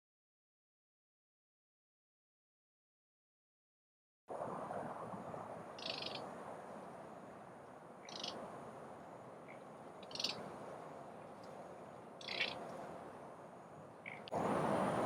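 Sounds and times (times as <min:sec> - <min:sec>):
outdoor background hiss: 0:04.3 - 0:15.0
bird giving high calls: 0:05.8 - 0:06.2, 0:08.0 - 0:08.4, 0:09.5 - 0:10.4, 0:12.2 - 0:12.6, 0:14.0 - 0:14.3.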